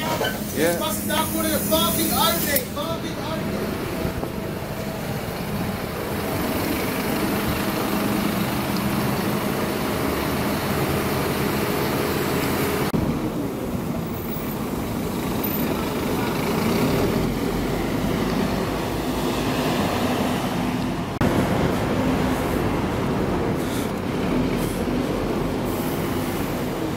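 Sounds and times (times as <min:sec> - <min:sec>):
bus engine hum: 0:00.0 - 0:26.9
road and interior noise: 0:00.0 - 0:26.9
upper hiss: 0:00.4 - 0:02.9.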